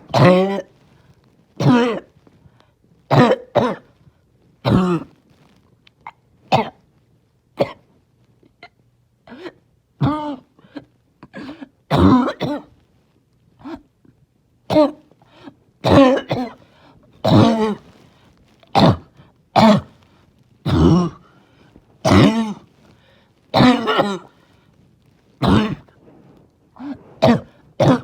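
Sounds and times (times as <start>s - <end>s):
person barking cough: 0.1s - 0.7s, 1.6s - 2.1s, 3.1s - 3.9s, 4.7s - 5.1s, 11.2s - 12.7s, 15.8s - 16.6s, 17.3s - 17.8s, 18.8s - 20.0s, 20.7s - 21.2s, 22.0s - 22.6s, 23.6s - 24.3s, 25.4s - 26.0s, 26.8s - 28.0s.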